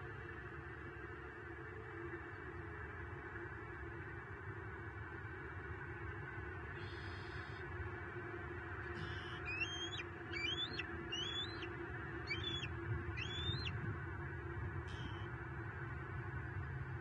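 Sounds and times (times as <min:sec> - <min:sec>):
background hiss and hum: 0:00.0 - 0:17.0
bird calling: 0:06.8 - 0:07.6, 0:08.9 - 0:13.9, 0:14.9 - 0:15.3.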